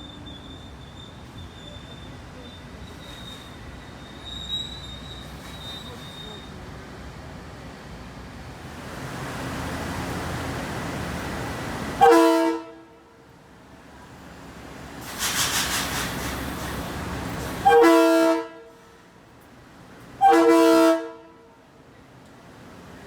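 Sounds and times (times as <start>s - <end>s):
train horn blasts: 12.0s - 13.3s, 17.6s - 19.0s, 20.2s - 21.6s
rush of hiss: 14.9s - 17.6s.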